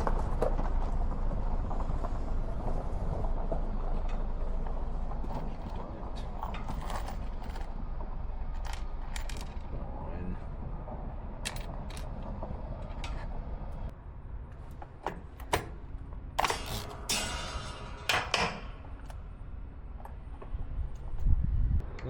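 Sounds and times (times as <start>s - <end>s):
hand tools clicking on metal: 16.4s - 19.2s.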